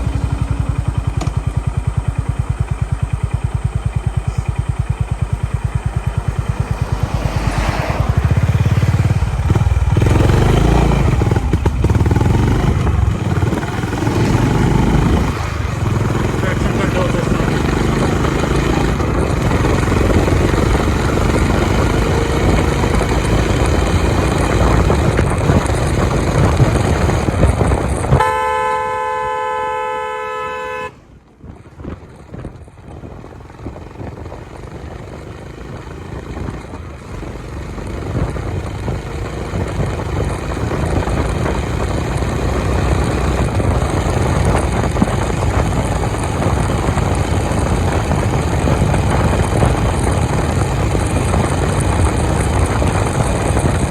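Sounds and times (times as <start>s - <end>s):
motorcycle engine at speed: 0.0s - 53.9s
wind rush: 5.9s - 28.4s, 31.1s - 53.9s
vehicle horn: 28.0s - 31.1s.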